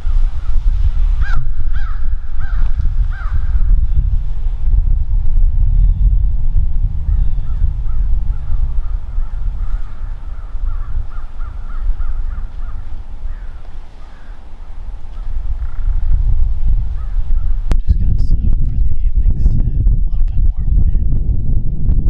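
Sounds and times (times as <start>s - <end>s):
bird calling: 0.0s - 3.7s, 7.0s - 17.6s
wind rumble on microphone: 0.0s - 22.0s.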